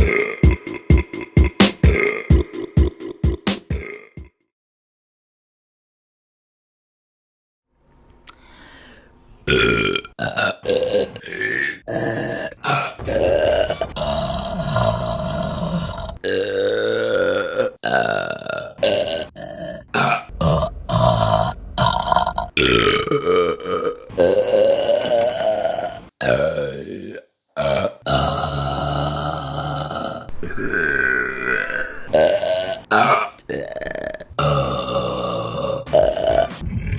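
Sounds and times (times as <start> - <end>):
women burping: 34.4 - 35.8.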